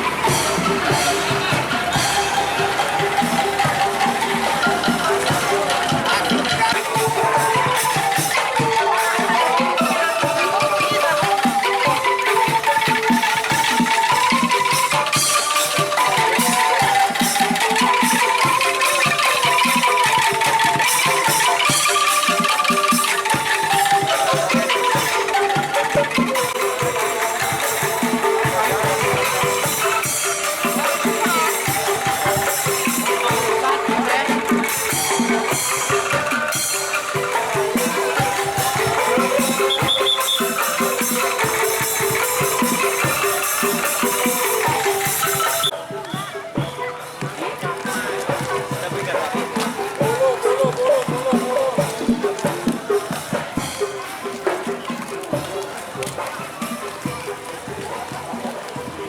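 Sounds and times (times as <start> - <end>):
loud music over sound system: 0.0 - 46.3.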